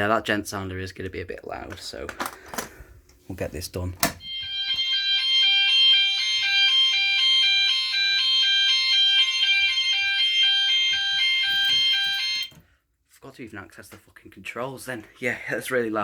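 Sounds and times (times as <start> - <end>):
fire alarm alternating tone: 4.2 - 12.6.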